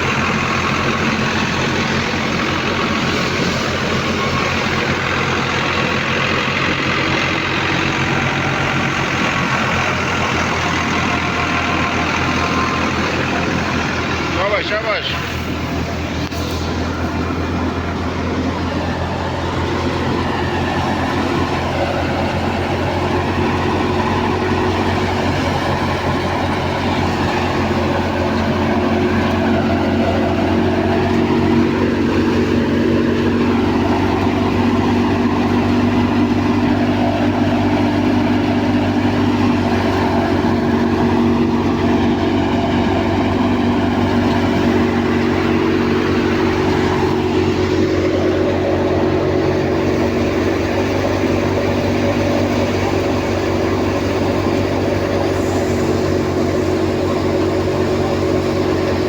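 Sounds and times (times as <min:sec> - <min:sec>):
harvester engine droning: 0:00.0 - 0:59.0.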